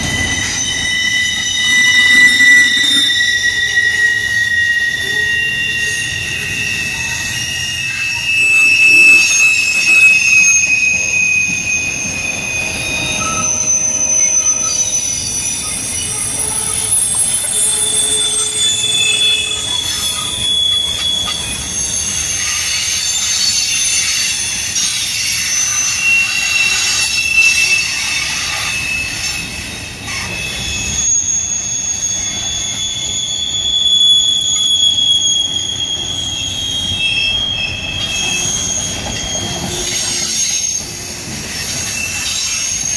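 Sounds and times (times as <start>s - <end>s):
low rumble of rolling freight cars: 0.0s - 42.9s
train wheels squealing: 0.0s - 42.9s.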